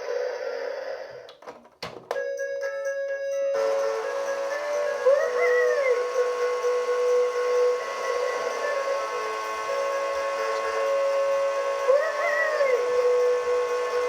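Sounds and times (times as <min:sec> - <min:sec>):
electronic whistle tones: 0:03.6 - 0:14.0.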